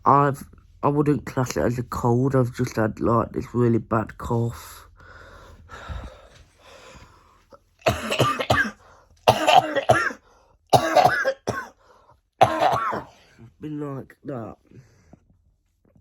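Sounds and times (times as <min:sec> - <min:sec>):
person coughing: 0:07.8 - 0:11.8, 0:12.4 - 0:13.2.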